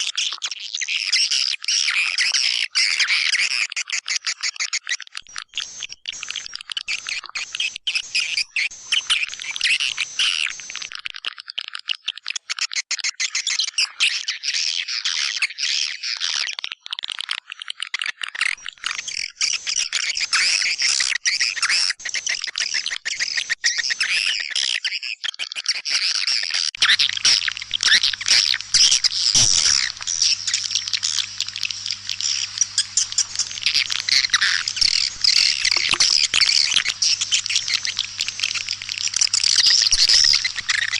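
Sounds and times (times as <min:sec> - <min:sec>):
low steady hum: 0:26.8 - 0:40.9
swiftlets chirping: 0:26.8 - 0:40.9.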